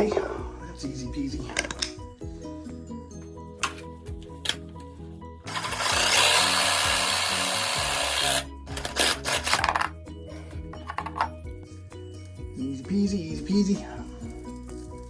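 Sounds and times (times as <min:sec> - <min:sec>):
background music: 0:00.0 - 0:15.0
saw cutting plastic pipe: 0:05.5 - 0:09.7.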